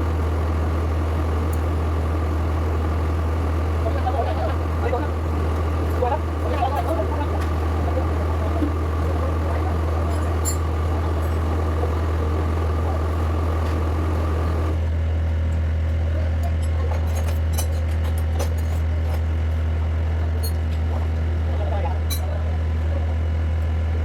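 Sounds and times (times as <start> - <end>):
excavator diesel engine hum: 0.0 - 24.0.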